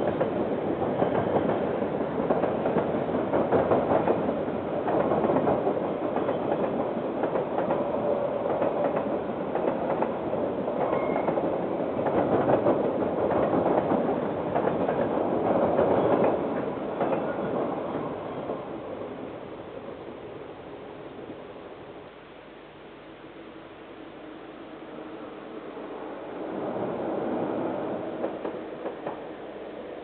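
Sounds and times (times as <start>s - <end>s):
train wheels clicking on rails: 0.0s - 19.1s, 26.4s - 30.0s.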